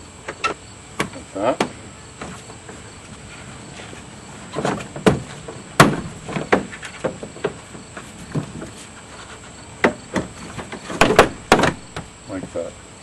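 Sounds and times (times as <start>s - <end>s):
knocks on car door panel: 4.7s - 7.6s.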